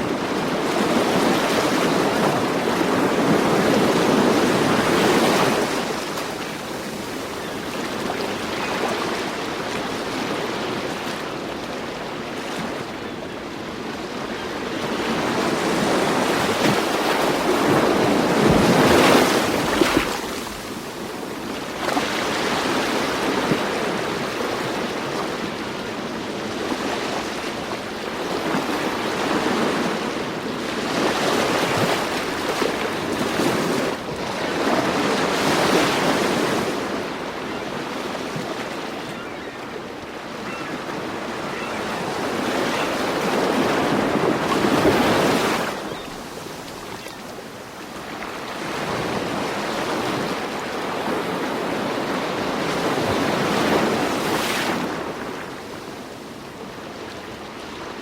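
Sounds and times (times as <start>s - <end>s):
rushing water: 14.9s - 25.6s, 31.4s - 55.5s.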